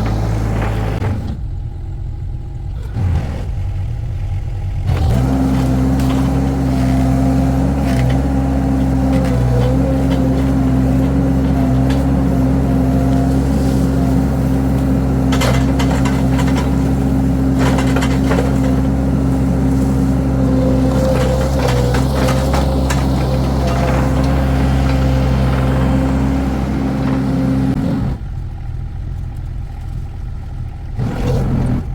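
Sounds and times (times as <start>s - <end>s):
engine running steadily: 0.0s - 31.9s.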